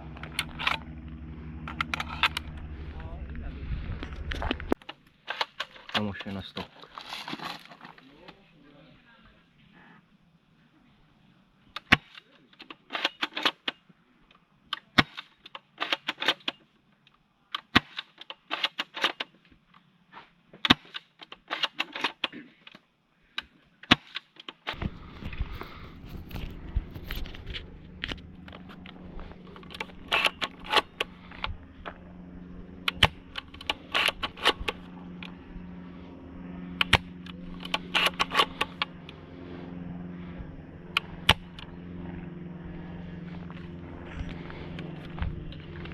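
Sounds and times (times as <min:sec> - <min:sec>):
steady low hum: 0:00.0 - 0:11.8, 0:24.7 - 0:45.9
rifle bolt clicks and shots: 0:00.2 - 0:00.9, 0:01.7 - 0:02.6, 0:04.8 - 0:06.4, 0:11.7 - 0:13.8, 0:14.7 - 0:19.3, 0:20.6 - 0:22.8, 0:27.1 - 0:31.6, 0:32.8 - 0:35.4, 0:36.8 - 0:39.2.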